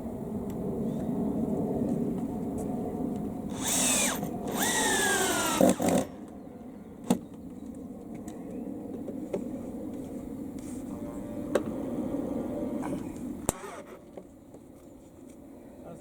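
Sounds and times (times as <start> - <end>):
cordless drill whining: 3.5 - 6.0, 13.5 - 14.0.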